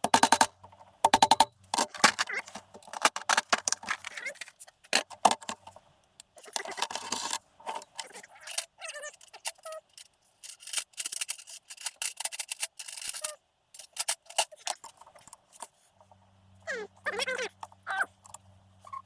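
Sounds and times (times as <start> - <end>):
metal tools and parts clinking: 0.0 - 5.8, 6.4 - 15.7.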